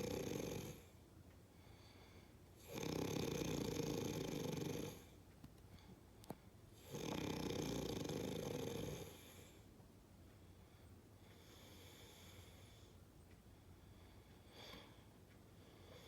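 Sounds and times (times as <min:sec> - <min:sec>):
person snoring: 0:00.0 - 0:00.8, 0:02.6 - 0:05.1, 0:06.8 - 0:09.5
quiet breathing: 0:00.0 - 0:16.0.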